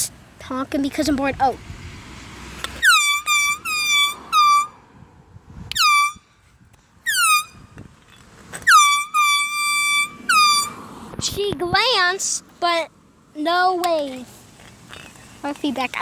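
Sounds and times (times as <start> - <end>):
air horn toots: 2.8 - 4.9, 5.6 - 6.4, 7.0 - 7.7, 8.6 - 11.0.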